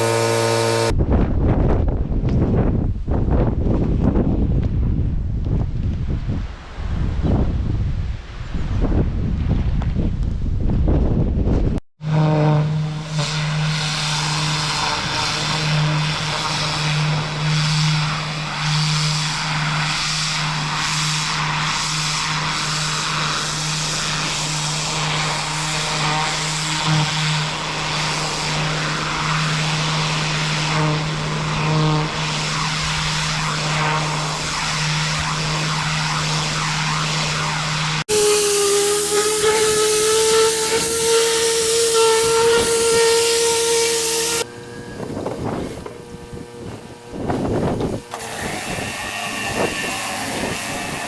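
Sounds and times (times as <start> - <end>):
high-pressure water spray hiss: 0.0 - 0.9, 12.9 - 44.5, 47.2 - 51.0
pressure washer engine hum: 0.0 - 0.9, 12.1 - 51.0
wind buffeting microphone: 0.8 - 11.8, 44.4 - 51.0.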